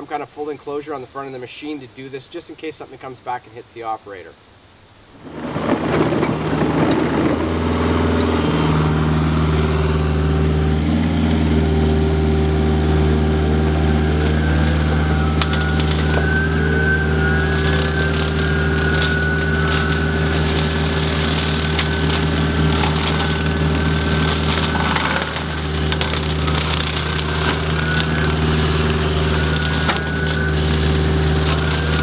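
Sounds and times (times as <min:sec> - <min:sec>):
diesel engine running under load: 0:05.3 - 0:32.0.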